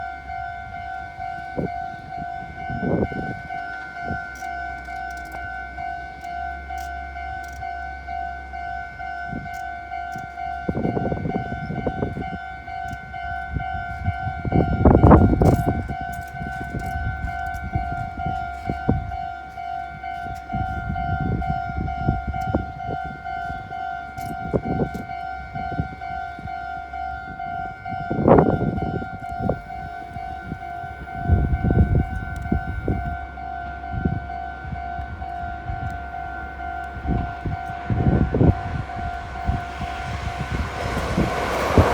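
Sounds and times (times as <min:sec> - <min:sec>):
level-crossing alarm bell: 0:00.0 - 0:41.9
low rumbles: 0:27.2 - 0:41.9.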